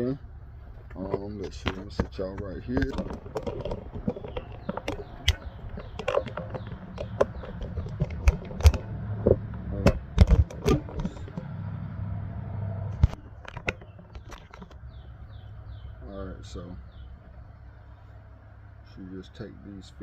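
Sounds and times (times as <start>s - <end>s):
clicks and knocks of tools handled: 1.1s - 11.5s, 13.0s - 14.8s.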